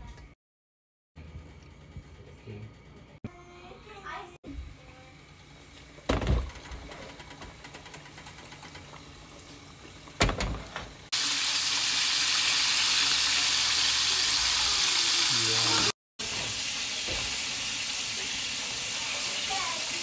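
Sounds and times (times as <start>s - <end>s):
chicken sizzling in hot oil: 11.1s - 20.0s.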